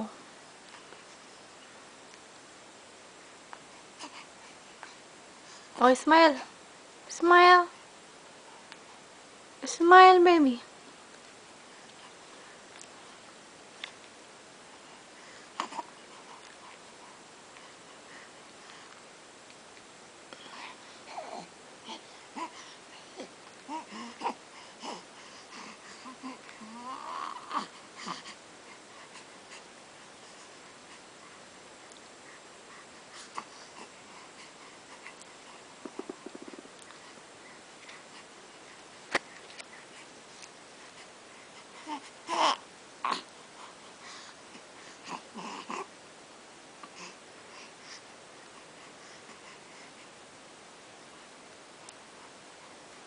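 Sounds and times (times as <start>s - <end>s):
baby grunting: 41.8s - 43.3s, 45.0s - 45.9s.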